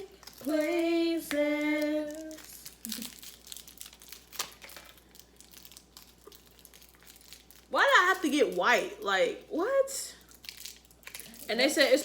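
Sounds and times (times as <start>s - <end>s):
plastic wrapper crinkling: 0.0s - 0.9s, 1.7s - 9.0s, 10.1s - 12.0s.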